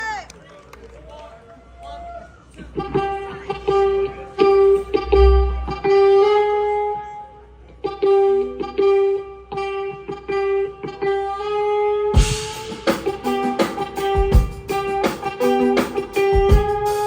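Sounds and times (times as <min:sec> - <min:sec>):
electric guitar riff: 0:02.8 - 0:17.0
drum hit with cymbal crash: 0:12.2 - 0:17.0.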